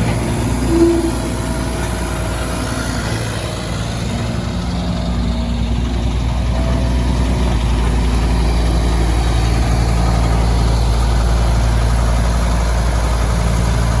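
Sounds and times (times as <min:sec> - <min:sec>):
mini excavator diesel engine running: 0:00.0 - 0:14.0.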